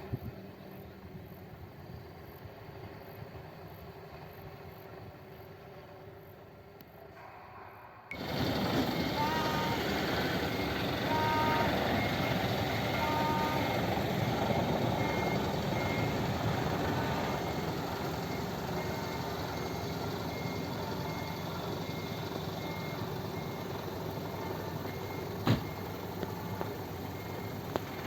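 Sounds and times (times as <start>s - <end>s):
bus engine running: 0.0s - 28.0s
high-pitched reversing alarm beeping: 7.4s - 28.0s.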